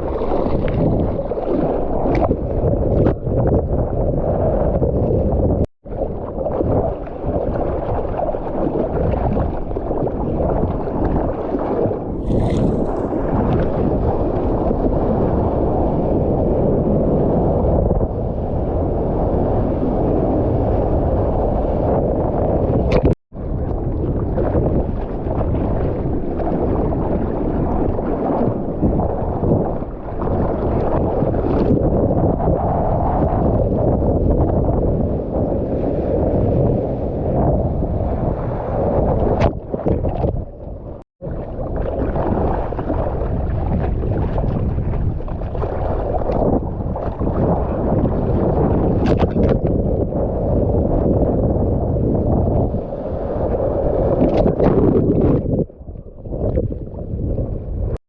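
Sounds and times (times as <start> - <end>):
wind buffeting microphone: 0.0 - 58.0
water rushing: 12.1 - 14.9.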